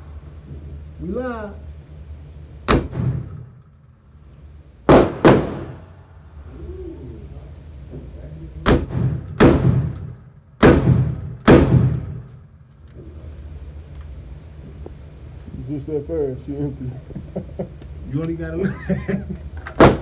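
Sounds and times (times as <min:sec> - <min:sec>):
gunshots with echo: 0:02.7 - 0:03.5, 0:04.9 - 0:06.0, 0:08.6 - 0:12.3.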